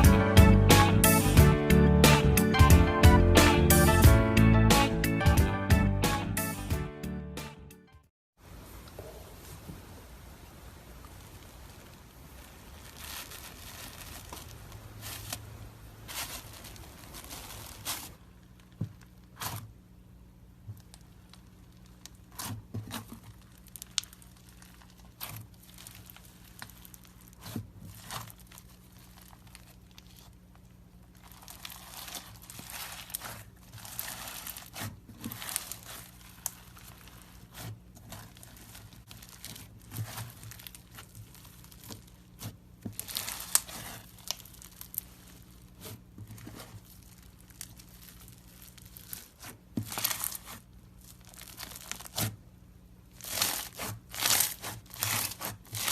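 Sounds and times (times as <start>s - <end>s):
faint steady hum: 8.4s - 55.9s
slime squeezed crackling and popping: 20.8s - 52.4s, 53.0s - 55.9s.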